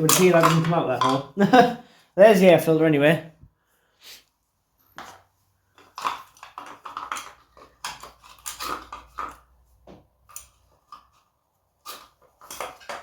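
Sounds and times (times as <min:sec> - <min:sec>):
plastic and metal parts clattering: 0:00.0 - 0:01.5, 0:05.0 - 0:13.0.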